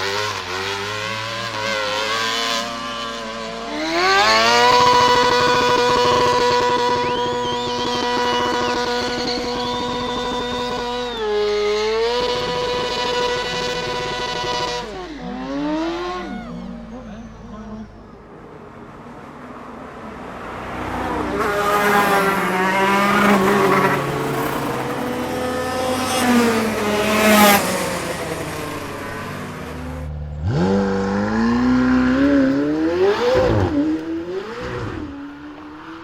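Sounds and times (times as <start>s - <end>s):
race car engine accelerating: 0.0s - 36.0s
racing engine revving: 0.0s - 36.0s.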